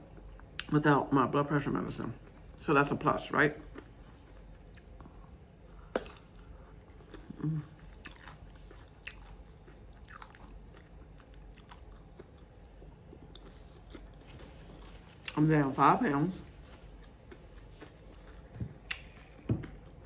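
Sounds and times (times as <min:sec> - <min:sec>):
person chewing food: 0:02.1 - 0:02.6, 0:03.6 - 0:15.4, 0:16.4 - 0:20.0.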